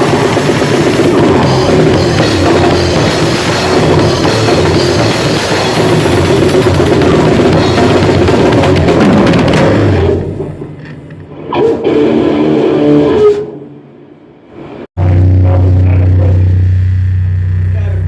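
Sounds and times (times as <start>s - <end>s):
fast pounding drum kit: 0.0s - 10.8s
loud guitars: 0.0s - 13.7s, 15.0s - 18.0s.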